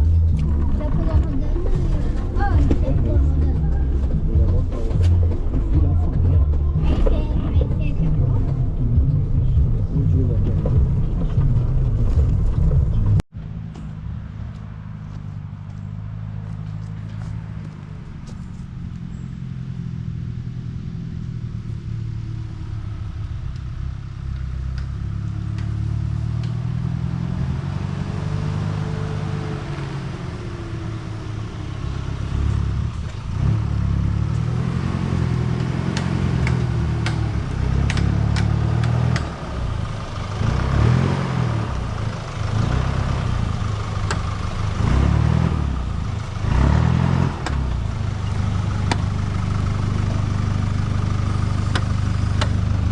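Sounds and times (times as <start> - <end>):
knocks and rattles: 0.0 - 14.0
diesel engine running: 0.0 - 52.9.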